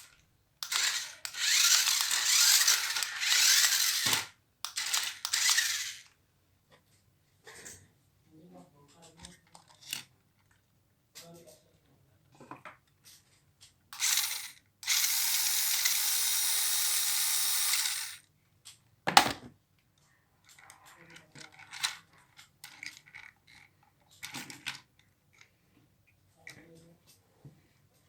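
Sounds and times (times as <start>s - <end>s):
small electric motors whirring: 0.6s - 6.1s, 14.0s - 18.2s.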